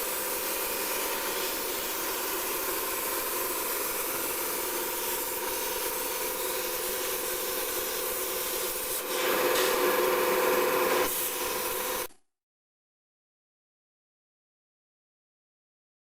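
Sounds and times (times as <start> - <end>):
plasma torch hissing and whining: 0.0 - 12.1.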